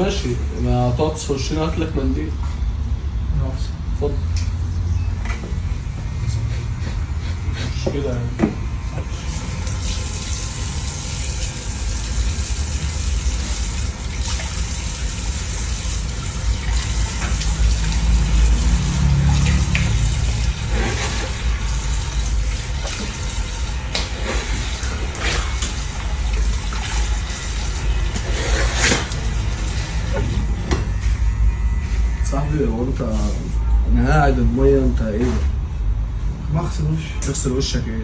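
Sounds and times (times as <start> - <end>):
tap water running into sink: 9.3 - 30.2.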